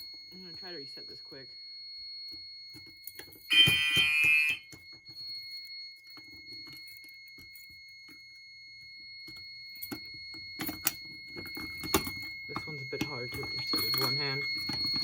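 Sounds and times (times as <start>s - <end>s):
steady high-pitched panel tone: 0.0s - 15.0s
fire alarm horn blast: 3.5s - 4.7s.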